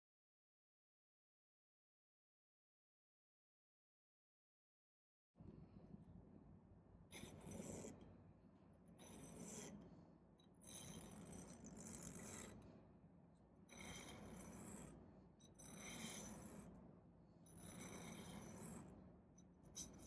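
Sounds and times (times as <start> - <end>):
blade rasping on sharpening stone: 7.1 - 8.0, 9.0 - 9.8, 10.6 - 12.6, 13.7 - 16.7, 17.5 - 18.9, 19.6 - 20.0.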